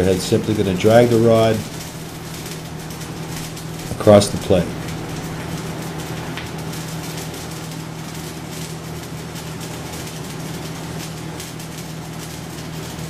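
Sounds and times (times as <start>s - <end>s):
constant low hum: 0.0s - 13.0s
welding arc crackling: 0.0s - 13.0s.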